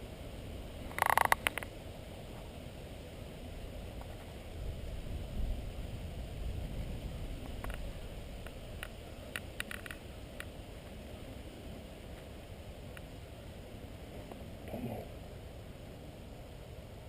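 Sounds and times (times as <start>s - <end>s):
faint clicks: 0.8s - 1.7s, 7.4s - 11.0s, 12.9s - 13.1s
wind buffeting microphone: 3.6s - 10.4s.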